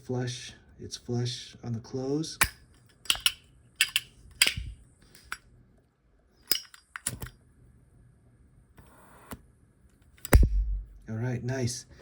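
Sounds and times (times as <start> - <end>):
lighter lid clicking open and shut: 2.4 - 5.4, 6.5 - 7.3.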